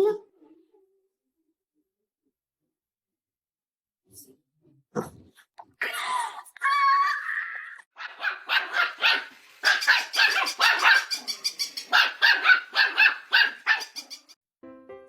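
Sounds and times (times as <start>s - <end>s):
dog barking rapidly: 8.0s - 14.4s.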